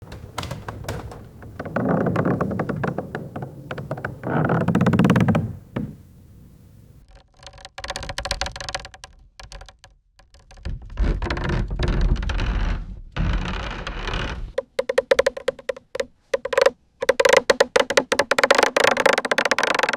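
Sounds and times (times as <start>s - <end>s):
wooden stairs creaking: 0.0s - 7.0s.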